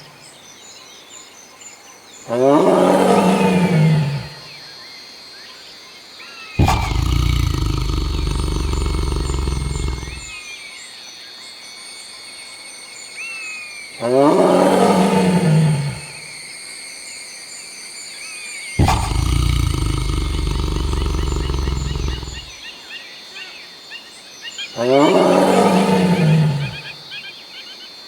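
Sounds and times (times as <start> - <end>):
tiger roaring: 2.3 - 4.5, 6.6 - 10.3, 14.0 - 16.4, 18.8 - 22.6, 24.8 - 27.0
bird calls: 6.2 - 10.4, 18.6 - 22.8.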